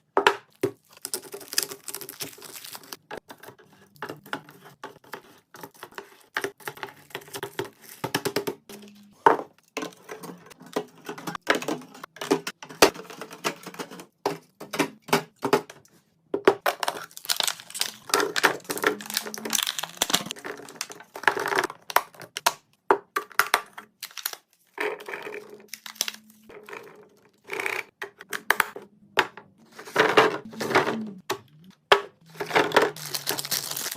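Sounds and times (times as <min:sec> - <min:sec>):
plastic containers clacking: 0:00.0 - 0:33.9
plastic packaging crinkling: 0:00.8 - 0:03.1, 0:16.7 - 0:21.7, 0:24.0 - 0:24.6, 0:25.7 - 0:26.5, 0:32.4 - 0:33.9.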